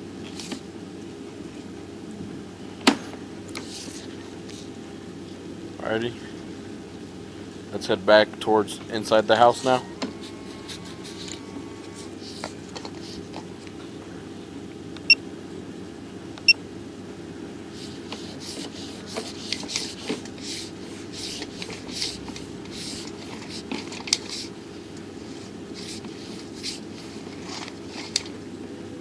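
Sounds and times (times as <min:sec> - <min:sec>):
low hum: 0:04.8 - 0:12.2.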